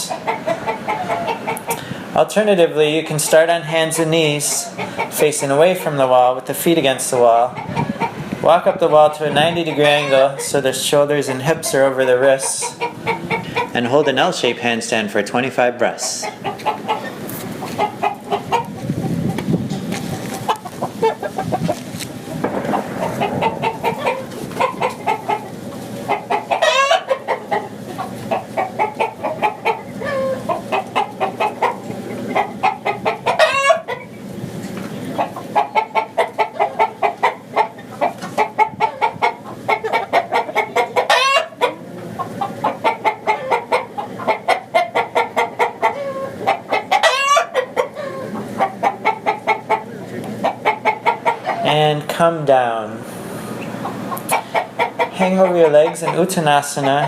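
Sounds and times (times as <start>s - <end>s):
loud high chicken calls: 0.0s - 2.2s, 3.2s - 6.3s, 7.3s - 8.8s, 9.4s - 10.8s, 11.4s - 14.3s, 16.0s - 51.8s, 53.2s - 57.0s
chickens clucking: 0.0s - 57.0s.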